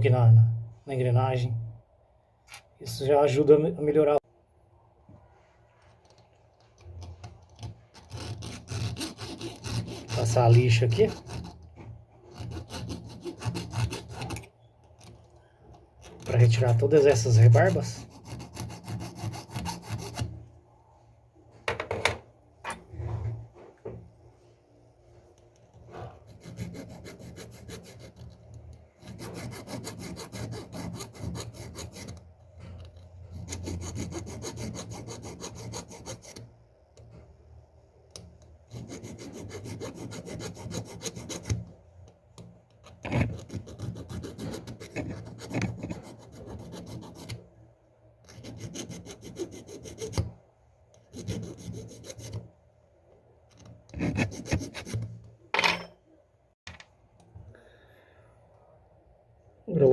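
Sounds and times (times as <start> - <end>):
sandpaper scraping metal gear: 8.0 - 11.5.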